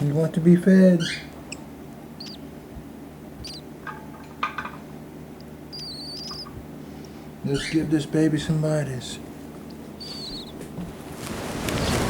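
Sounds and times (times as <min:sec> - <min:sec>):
parrot chick begging squeaks: 0:02.2 - 0:02.5, 0:03.4 - 0:03.7, 0:05.7 - 0:06.6, 0:10.0 - 0:10.6.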